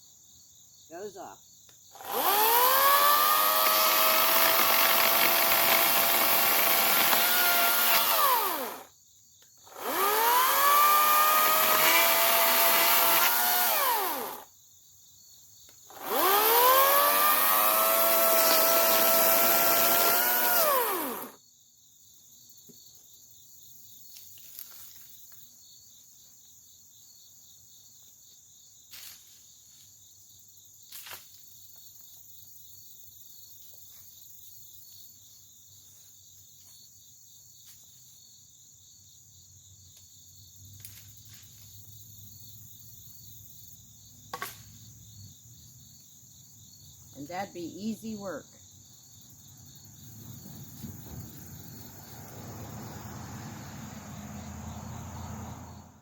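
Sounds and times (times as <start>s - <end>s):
crickets chirping: 0.0s - 56.0s
battery chainsaw whirring: 1.9s - 8.9s, 9.6s - 14.5s, 15.9s - 21.4s.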